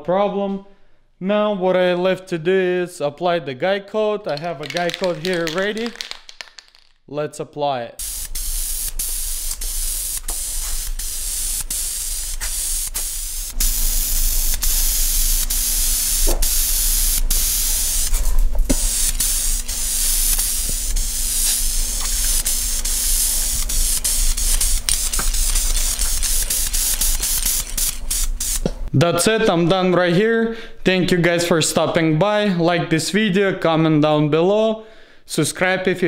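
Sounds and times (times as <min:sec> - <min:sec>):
spray gun hissing: 0:08.0 - 0:28.7.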